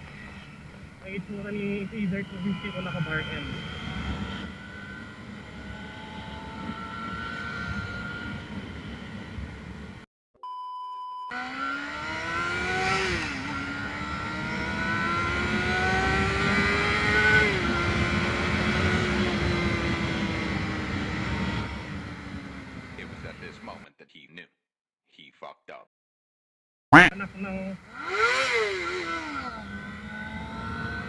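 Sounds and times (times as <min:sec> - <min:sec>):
motorcycle engine accelerating: 0:00.0 - 0:10.0, 0:11.3 - 0:23.8, 0:27.0 - 0:31.0
short steady beep: 0:10.4 - 0:11.4.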